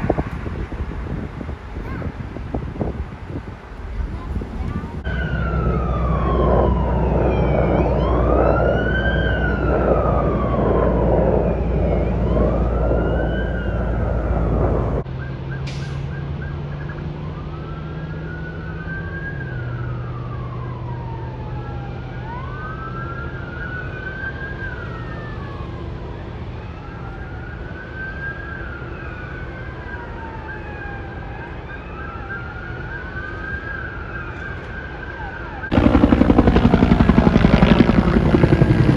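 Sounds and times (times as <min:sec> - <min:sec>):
heavy rumble: 0:00.0 - 0:15.0, 0:35.7 - 0:38.9
emergency sirens wailing: 0:00.0 - 0:15.3, 0:16.3 - 0:38.9
low hum: 0:35.7 - 0:38.9.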